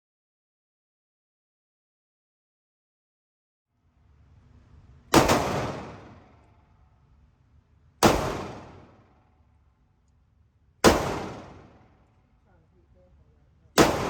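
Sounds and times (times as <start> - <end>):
gunshots with ringing echo: 5.1 - 6.4, 8.0 - 9.0, 10.8 - 12.0, 13.8 - 14.0.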